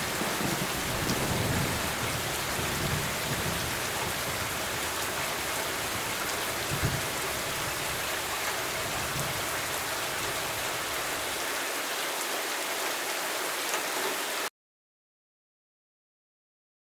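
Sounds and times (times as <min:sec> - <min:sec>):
low thunder rumble: 0:00.0 - 0:10.9
heavy rain: 0:00.0 - 0:14.5.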